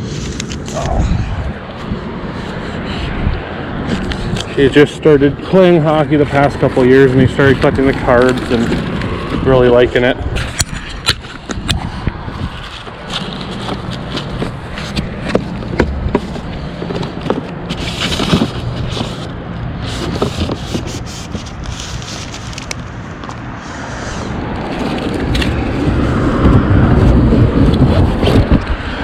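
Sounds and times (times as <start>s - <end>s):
rummaging knocks and clicks: 12.6s - 23.4s.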